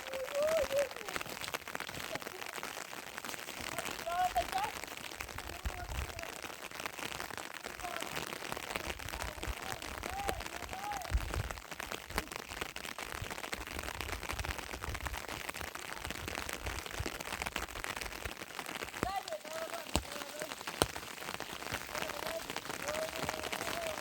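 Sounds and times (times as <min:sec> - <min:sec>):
heavy rain falling: 0:00.0 - 0:24.0
wind rumbling on microphone: 0:03.6 - 0:06.4, 0:07.8 - 0:18.3.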